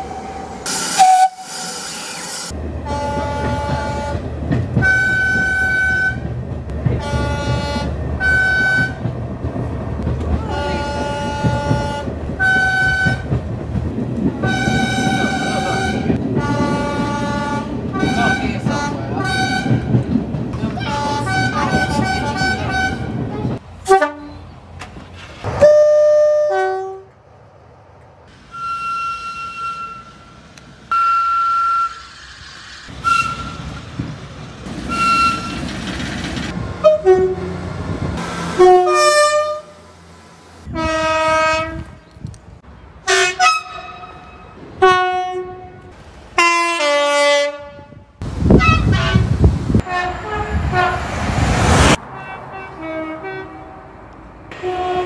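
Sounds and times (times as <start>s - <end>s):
passing train rumble: 0.0s - 55.0s
train horn blasts: 1.0s - 1.5s, 2.8s - 6.3s, 7.0s - 9.0s, 10.4s - 13.3s, 14.4s - 20.0s, 20.8s - 23.2s, 23.8s - 24.4s, 25.6s - 27.2s, 36.8s - 37.6s, 38.6s - 39.8s, 40.7s - 42.0s, 43.1s - 51.2s, 51.8s - 55.0s.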